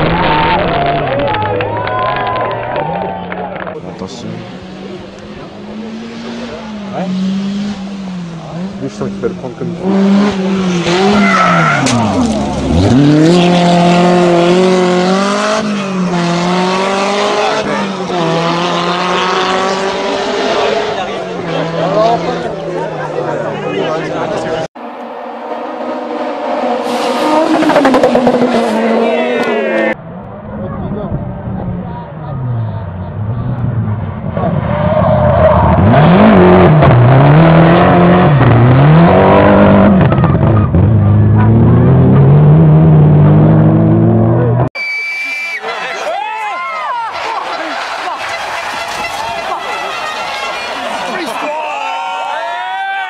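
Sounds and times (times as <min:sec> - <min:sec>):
car engine at high revs: 0:03.5 - 0:44.7.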